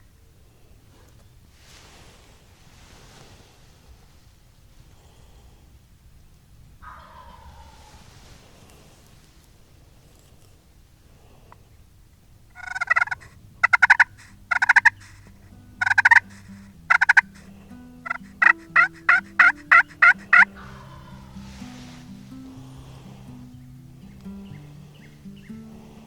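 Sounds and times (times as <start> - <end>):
turkey gobbling: 6.8 - 8.0, 12.5 - 22.0
soft background music: 13.7 - 26.0.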